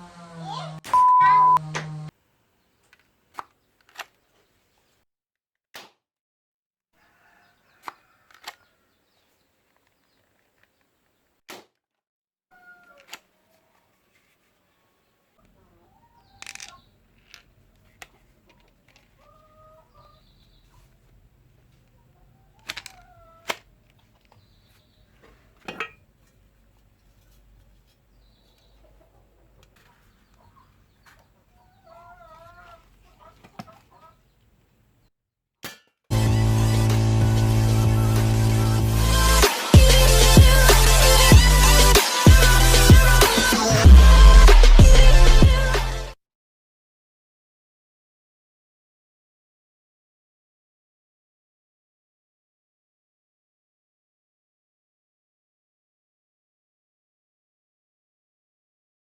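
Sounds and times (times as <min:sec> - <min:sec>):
chickens clucking: 0:07.0 - 0:09.4, 0:12.5 - 0:17.0, 0:17.7 - 0:34.5
toy gun snaps: 0:07.8 - 0:08.6.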